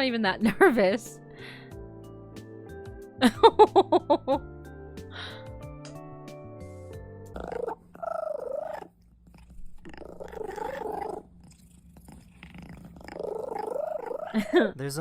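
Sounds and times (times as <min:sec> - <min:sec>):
music: 0:00.0 - 0:08.8
cat meowing: 0:09.8 - 0:11.2.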